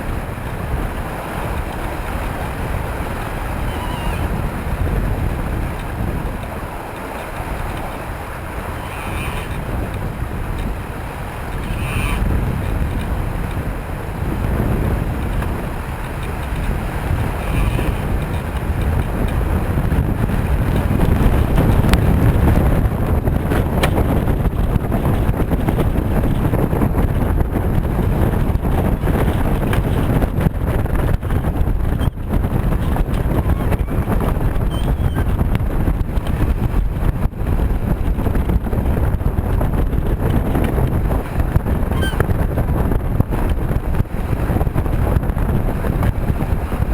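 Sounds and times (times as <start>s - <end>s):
wind buffeting microphone: 0.0s - 46.9s.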